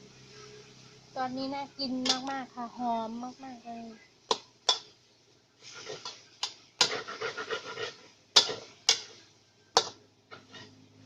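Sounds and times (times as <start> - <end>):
spatula scraping wok: 1.7 - 11.0
spatula knocking on wok: 8.4 - 9.2, 9.8 - 10.5.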